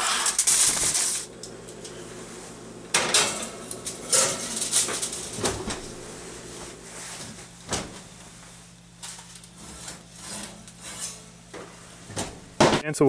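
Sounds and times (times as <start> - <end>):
steady low hum: 0.0 - 12.9.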